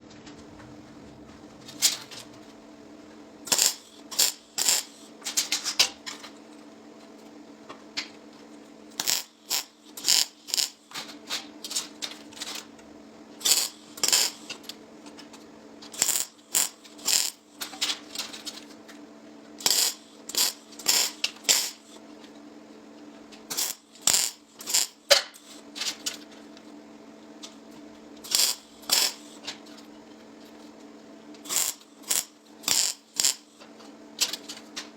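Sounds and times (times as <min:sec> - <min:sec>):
steady electrical hum: 0:00.0 - 0:34.9
welding arc crackling: 0:03.5 - 0:05.6, 0:08.9 - 0:11.1, 0:13.4 - 0:14.7, 0:15.9 - 0:18.4, 0:19.6 - 0:22.0, 0:23.5 - 0:25.6, 0:28.2 - 0:29.4, 0:31.4 - 0:33.6.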